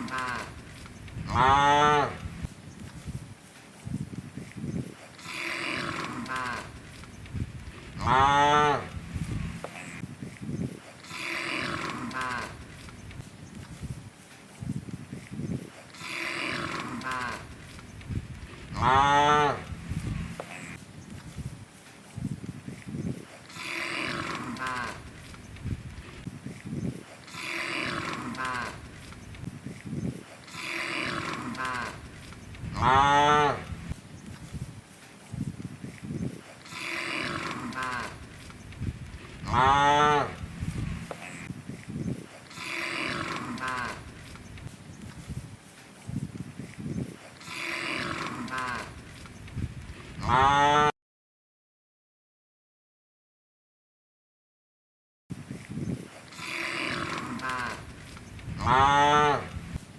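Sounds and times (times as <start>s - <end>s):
cows mooing: 0.0s - 2.5s, 5.2s - 6.8s, 7.7s - 10.0s, 11.0s - 12.8s, 15.9s - 17.7s, 18.4s - 20.8s, 23.5s - 25.2s, 27.2s - 29.0s, 30.4s - 34.0s, 36.6s - 38.4s, 39.1s - 41.5s, 42.5s - 44.3s, 47.4s - 49.0s, 50.2s - 50.9s, 56.3s - 59.8s.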